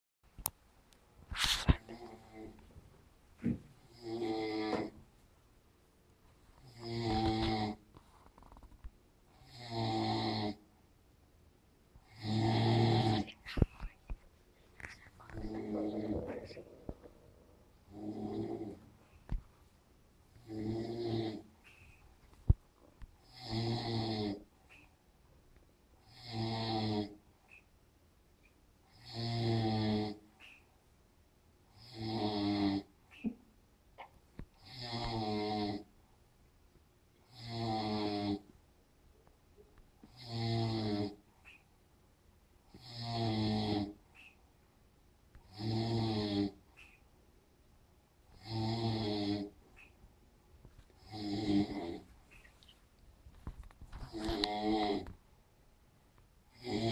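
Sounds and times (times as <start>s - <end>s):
heavy snoring: 3.8s - 5.0s, 6.6s - 7.8s, 9.3s - 10.6s, 12.0s - 13.4s, 15.3s - 18.9s, 20.4s - 21.5s, 23.2s - 24.5s, 26.0s - 27.2s, 28.9s - 30.2s, 31.7s - 32.9s, 34.6s - 35.9s, 37.3s - 38.5s, 40.1s - 41.2s, 42.7s - 44.0s, 45.4s - 46.6s, 48.4s - 49.6s, 51.0s - 52.1s, 54.1s - 55.1s, 56.5s - 56.9s.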